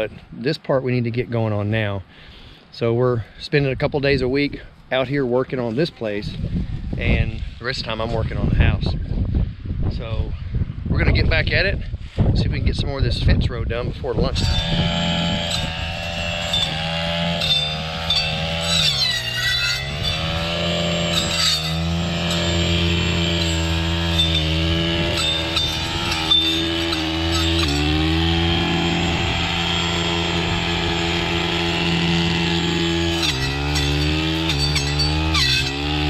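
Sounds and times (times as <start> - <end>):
chainsaw cutting wood: 14.3 - 36.0
wood cracking: 14.6 - 36.0.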